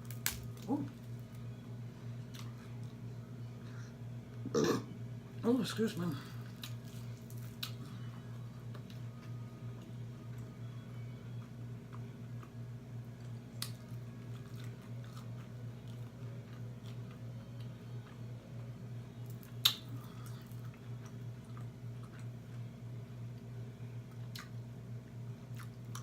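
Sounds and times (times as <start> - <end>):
steady low hum: 0.0 - 26.0
chewing crunchy chicken wing: 6.4 - 8.0, 11.4 - 18.7, 19.3 - 22.7, 25.4 - 26.0.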